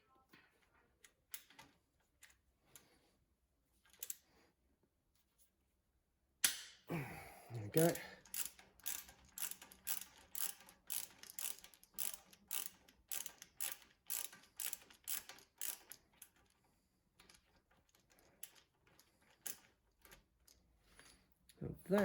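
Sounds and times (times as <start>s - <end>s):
ratchet spanner clicking: 7.9s - 16.3s.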